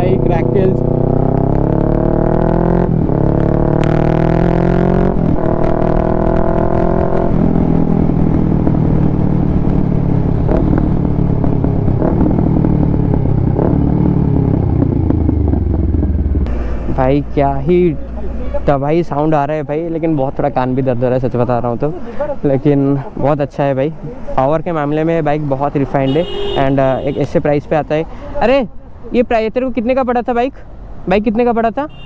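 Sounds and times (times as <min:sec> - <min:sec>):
motorcycle engine accelerating: 0:00.0 - 0:17.0
exhaust crackles: 0:00.0 - 0:17.7.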